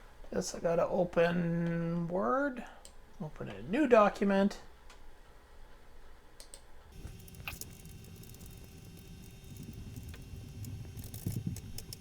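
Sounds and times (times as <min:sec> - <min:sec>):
sharp clicks: 0:06.4 - 0:12.0
computer humming: 0:06.9 - 0:12.0.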